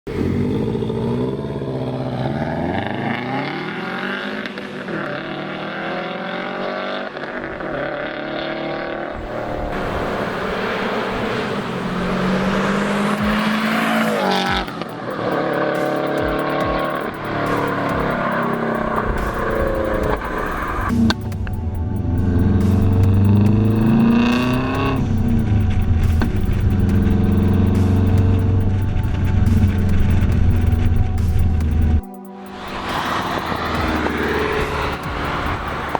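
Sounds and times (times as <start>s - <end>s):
car engine revving: 0.0s - 35.9s.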